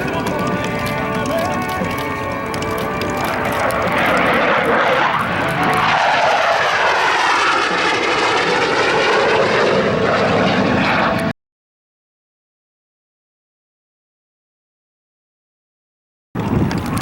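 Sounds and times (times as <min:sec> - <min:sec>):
jet flying past: 0:00.0 - 0:11.4.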